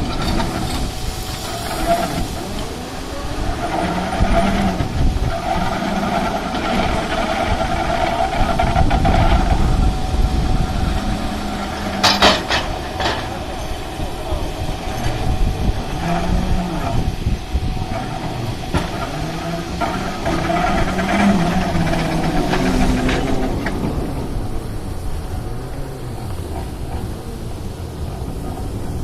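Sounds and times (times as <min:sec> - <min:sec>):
constant machine whine: 0:00.0 - 0:29.0
excavator machine hum: 0:00.0 - 0:29.0
sharp metallic knocks: 0:11.0 - 0:13.8.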